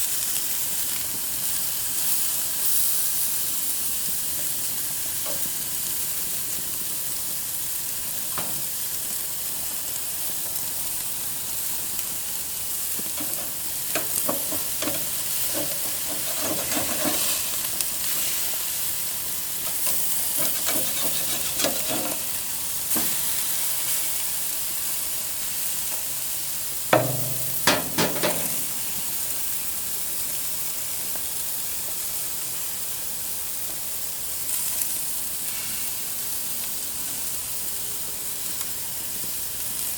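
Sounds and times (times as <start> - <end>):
food sizzling on a grill: 0.0 - 39.9
crackling pops: 11.9 - 18.5.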